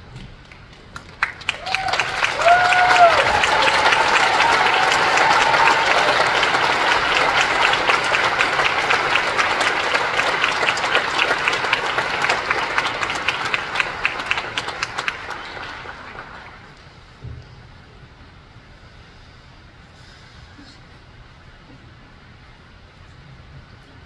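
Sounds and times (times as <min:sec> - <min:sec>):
audience applauding: 0:00.4 - 0:16.8.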